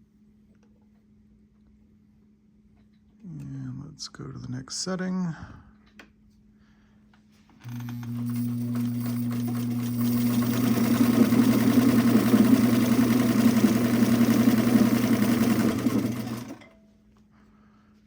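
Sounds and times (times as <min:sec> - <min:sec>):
sewing machine running: 0:07.6 - 0:16.8.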